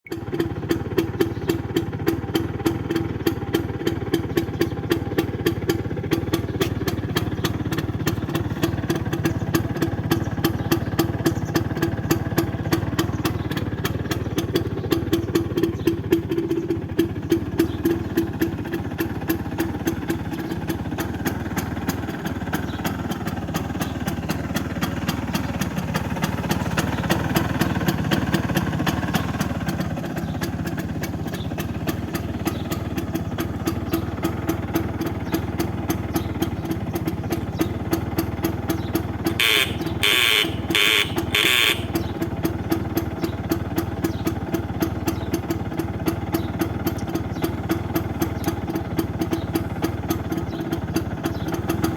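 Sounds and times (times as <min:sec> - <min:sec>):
scooter engine idling: 0:00.0 - 0:51.9
horn beeps: 0:39.4 - 0:42.0.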